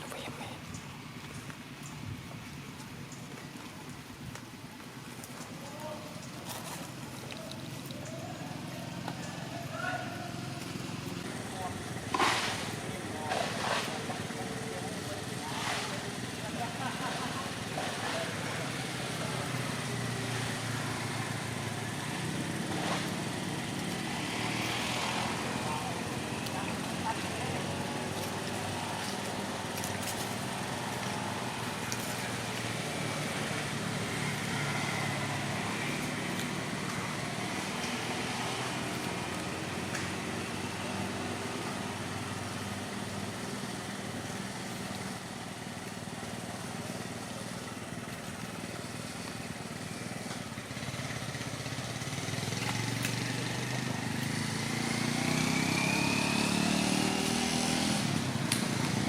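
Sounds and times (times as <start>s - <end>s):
motor vehicle engine running: 0.0s - 59.0s.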